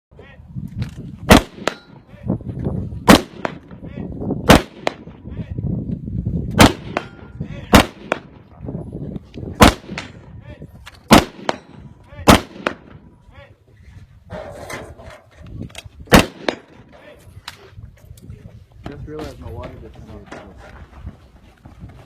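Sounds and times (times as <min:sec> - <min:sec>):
distant gunshots: 0:01.3 - 0:01.9, 0:03.1 - 0:03.7, 0:04.5 - 0:05.2, 0:06.6 - 0:08.4, 0:09.6 - 0:10.2, 0:11.1 - 0:13.0, 0:16.1 - 0:16.8
loud gunshots: 0:01.3 - 0:01.9, 0:03.0 - 0:03.8, 0:04.4 - 0:05.1, 0:06.6 - 0:08.4, 0:09.6 - 0:10.2, 0:11.1 - 0:13.0, 0:16.1 - 0:16.8.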